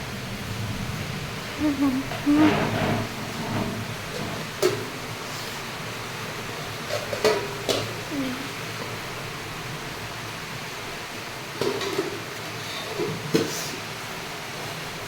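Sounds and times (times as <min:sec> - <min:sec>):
rain hissing: 0:00.0 - 0:15.0
distant voice: 0:01.6 - 0:02.7.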